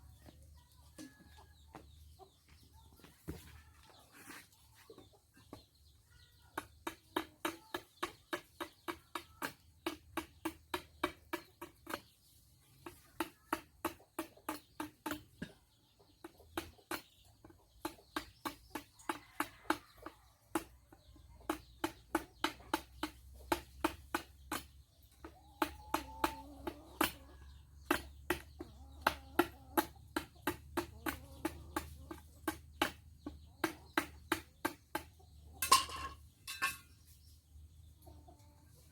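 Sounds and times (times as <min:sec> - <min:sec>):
chickens clucking: 0:00.0 - 0:38.9.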